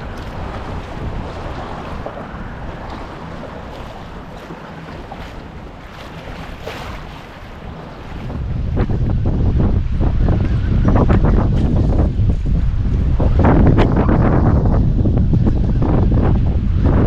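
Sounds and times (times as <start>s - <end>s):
small splashes: 0.0s - 8.4s
water lapping against kayak: 0.0s - 15.8s
wind buffeting microphone: 0.0s - 17.0s.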